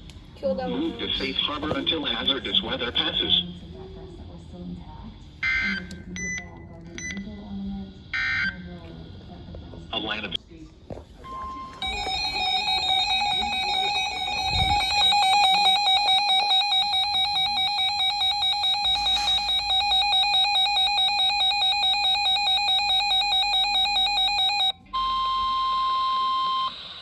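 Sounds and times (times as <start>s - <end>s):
steady warning tone: 11.3s - 27.0s
warbling alert alarm: 11.7s - 27.0s.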